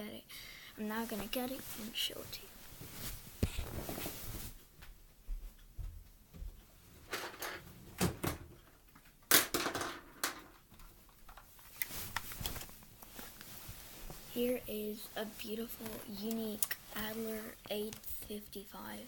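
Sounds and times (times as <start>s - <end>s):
rustling while handling object: 0.9s - 4.8s, 10.8s - 18.9s.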